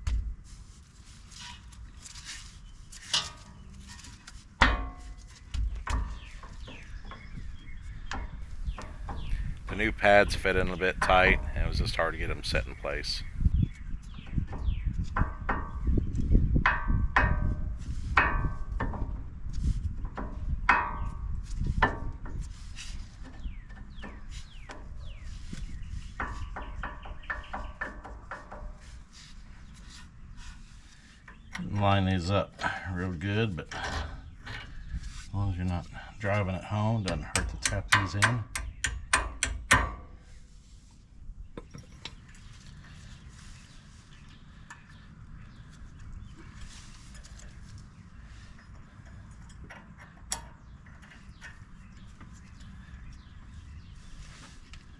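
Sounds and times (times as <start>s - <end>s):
low background hum: 8.5s - 13.5s.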